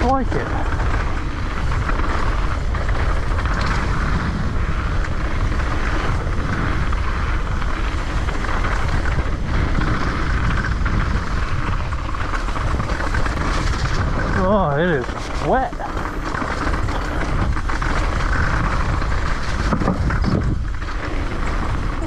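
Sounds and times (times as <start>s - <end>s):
mountain bike riding down trail: 0.0s - 22.0s
brake pads rattling: 5.1s - 22.0s.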